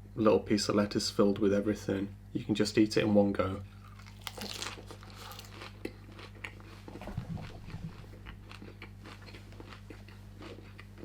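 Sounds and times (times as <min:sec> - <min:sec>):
person chewing crunchy food: 0:03.7 - 0:11.0.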